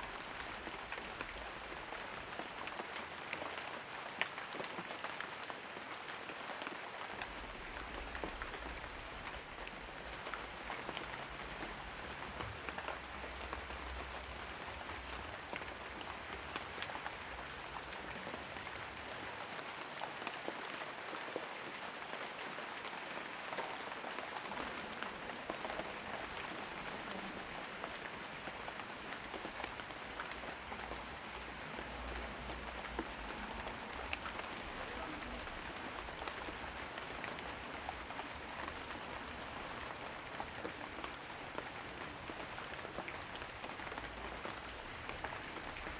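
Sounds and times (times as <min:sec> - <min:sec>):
steady rain falling: 0:00.0 - 0:45.9.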